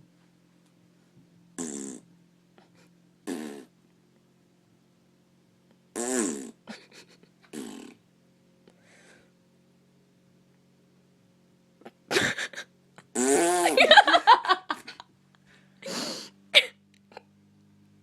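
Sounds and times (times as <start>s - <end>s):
fart-like raspberry noises: 1.6s - 2.1s, 3.2s - 3.7s, 5.9s - 6.8s, 7.4s - 8.0s, 13.0s - 13.9s.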